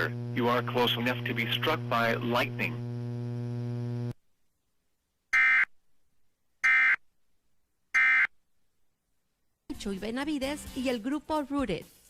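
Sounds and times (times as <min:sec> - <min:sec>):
steady electrical hum: 0:00.0 - 0:04.2.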